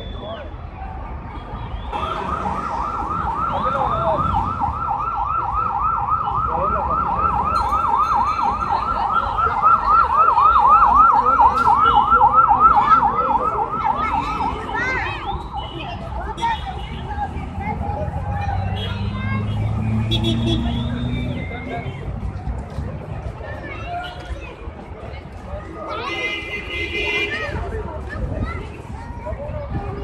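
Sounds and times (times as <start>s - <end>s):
road traffic rumble: 0.0s - 30.0s
emergency siren yelping: 2.0s - 15.7s.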